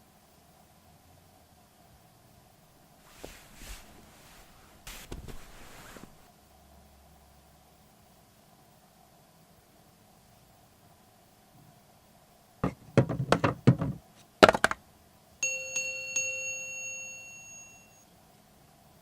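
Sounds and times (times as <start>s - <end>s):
sharp knocks and rattles: 12.6s - 14.8s
bell-like chime: 15.4s - 18.1s.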